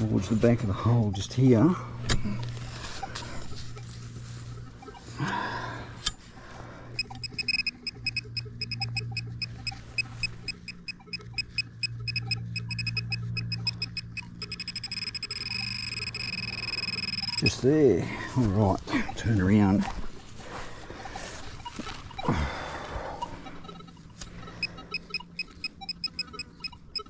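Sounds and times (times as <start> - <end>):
low steady hum: 0.0 - 27.0
pinpointer probe beeping: 7.0 - 17.6, 23.6 - 27.0.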